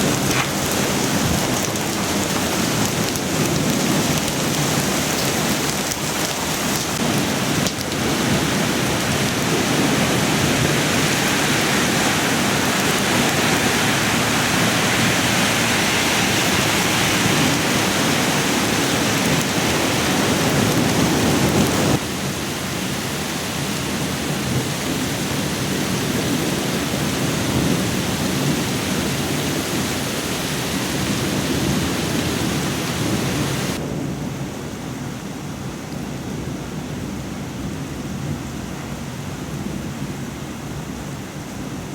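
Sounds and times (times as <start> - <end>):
heavy rain pouring: 0.0 - 41.9.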